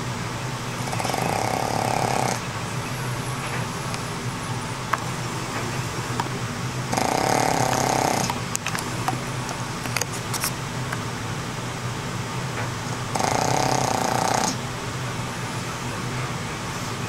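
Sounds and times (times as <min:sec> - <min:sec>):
dog snoring: 0:00.8 - 0:02.5, 0:06.9 - 0:08.4, 0:12.9 - 0:14.6.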